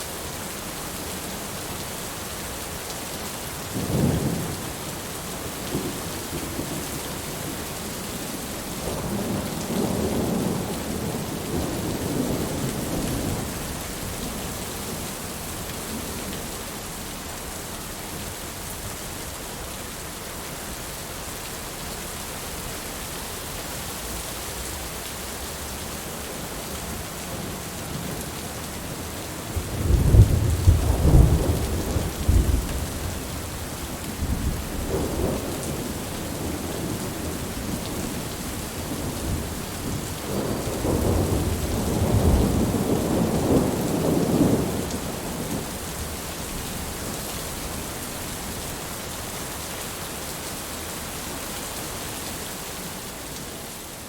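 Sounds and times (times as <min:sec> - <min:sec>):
heavy rain: 0:00.0 - 0:54.0
thunder rumbling: 0:29.5 - 0:46.2.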